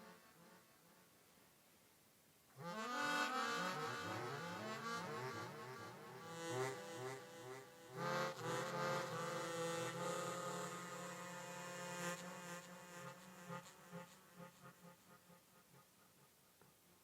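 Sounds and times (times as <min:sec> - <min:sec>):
low harmonica notes: 0:02.6 - 0:15.0.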